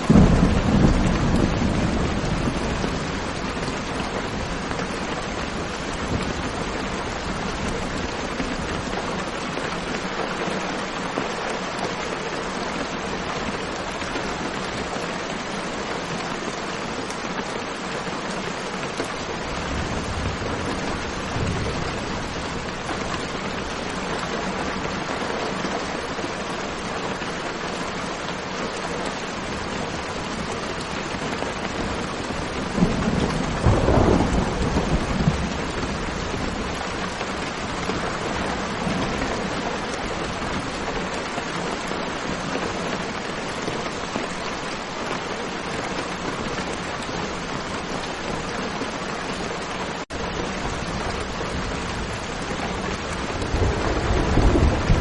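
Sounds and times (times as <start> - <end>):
low thunder rumble: 0.0 - 7.6, 32.1 - 40.6, 50.5 - 55.0
steady rain falling: 0.0 - 55.0.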